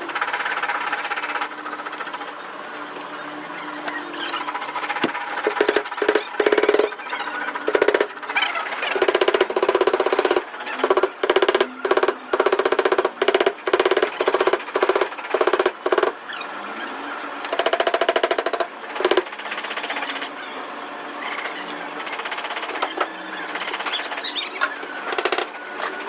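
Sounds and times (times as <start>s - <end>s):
power tool buzzing and rattling: 4.4s - 16.2s, 17.4s - 20.3s, 25.0s - 26.0s.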